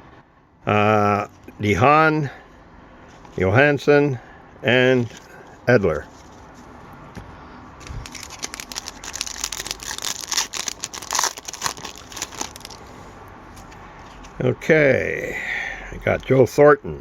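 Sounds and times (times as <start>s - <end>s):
foil wrapper crinkling: 7.8s - 12.8s.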